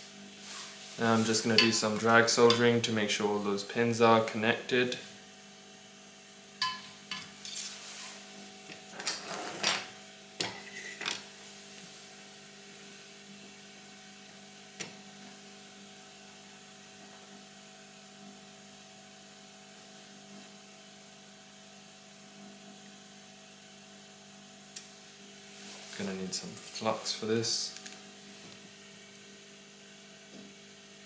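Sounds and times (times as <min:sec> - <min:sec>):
electrical hum with high whine: 0:00.0 - 0:31.0.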